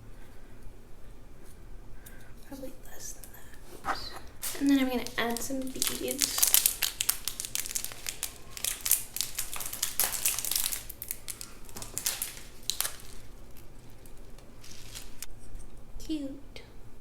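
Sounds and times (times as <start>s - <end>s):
packaging crinkling: 3.2s - 15.3s.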